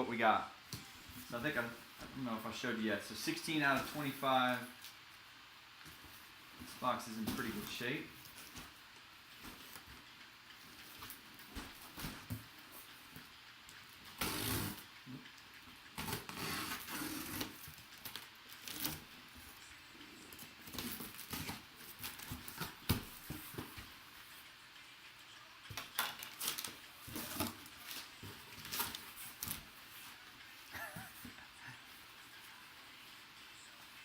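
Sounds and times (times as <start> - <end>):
cardboard scraping and tearing: 14.2 - 14.8, 16.0 - 17.6.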